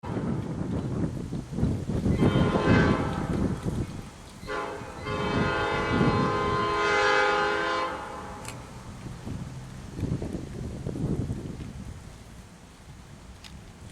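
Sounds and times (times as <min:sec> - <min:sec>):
locomotive air horn blasts: 0:02.1 - 0:03.6, 0:04.4 - 0:08.5.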